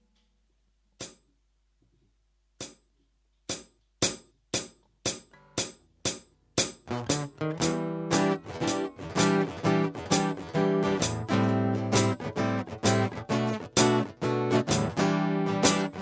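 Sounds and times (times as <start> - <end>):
foot percussion box hits: 3.5 - 16.0
acoustic guitar strumming: 6.8 - 16.0.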